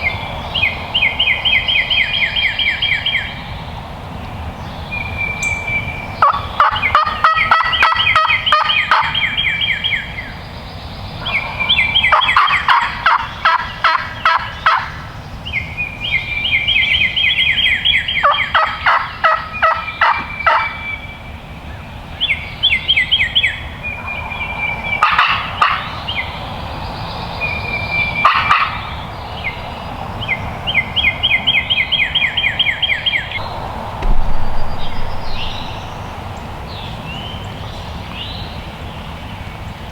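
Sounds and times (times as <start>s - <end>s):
turkey gobbling: 11.2s - 14.9s, 18.2s - 20.8s, 25.0s - 26.0s, 28.2s - 29.0s.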